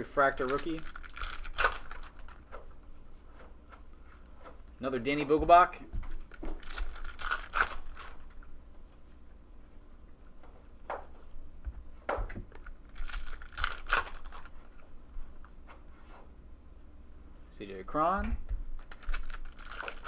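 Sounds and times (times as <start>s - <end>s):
foil wrapper tearing and crinkling: 0.1s - 2.5s, 6.1s - 8.4s, 12.5s - 14.6s, 18.8s - 20.0s
cards being handled: 0.1s - 4.7s, 18.8s - 20.0s.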